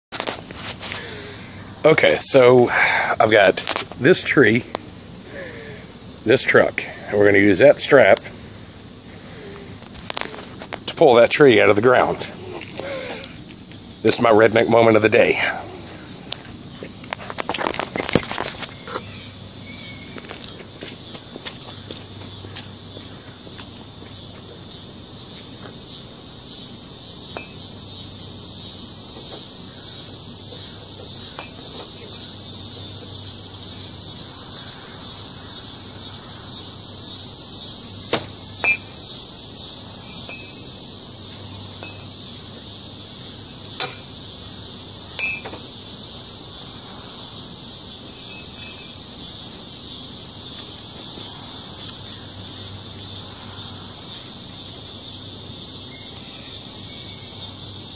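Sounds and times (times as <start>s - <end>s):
insects buzzing: 0.1s - 57.9s.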